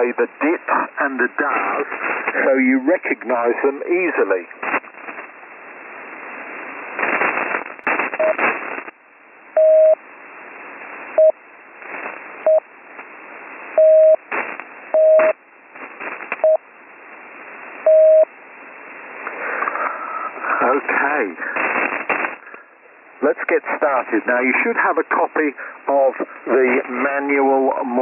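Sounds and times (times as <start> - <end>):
radio static hiss and crackling: 0.0 - 28.0
morse code tone: 13.8 - 14.2, 15.0 - 15.4.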